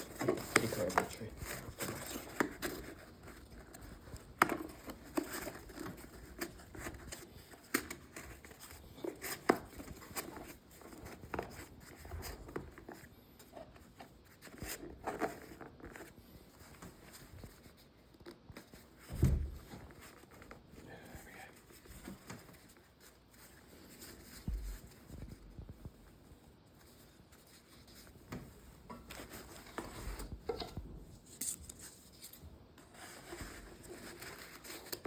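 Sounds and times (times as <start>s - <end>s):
small clicks taps and scrapes: 0.0s - 19.0s.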